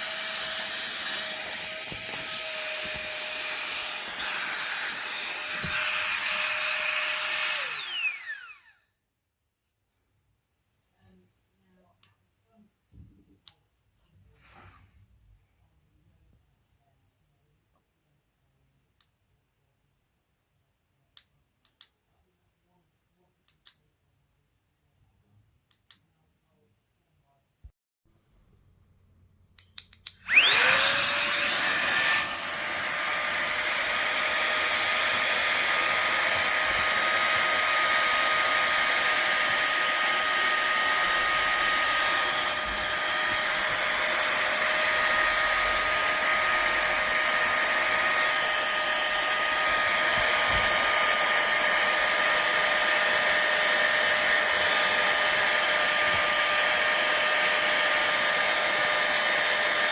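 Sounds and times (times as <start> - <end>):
electric air pump whining: 0.0 - 8.8, 30.1 - 59.9.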